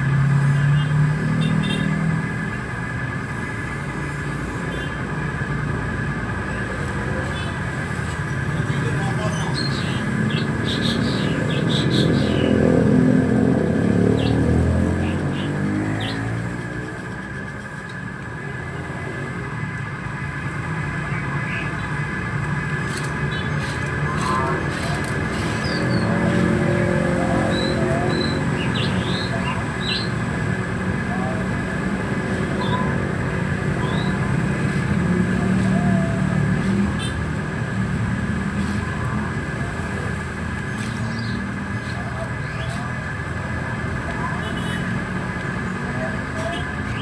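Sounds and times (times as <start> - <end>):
engine humming: 0.0 - 47.0
toy motors whirring: 0.2 - 5.0, 7.2 - 12.1, 22.8 - 32.6, 33.7 - 43.0.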